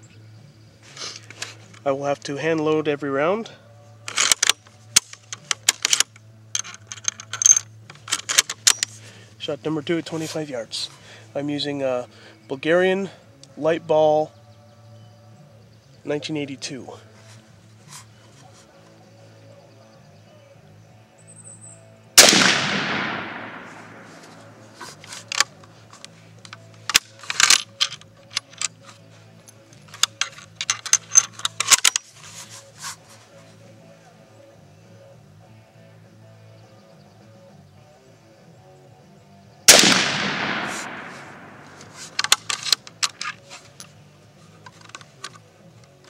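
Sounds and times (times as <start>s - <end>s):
rifle bolt clicking: 4.1s - 8.9s, 22.2s - 28.8s, 29.9s - 32.0s, 39.7s - 43.4s
rifle shot echoing: 22.2s - 24.9s, 39.7s - 42.2s.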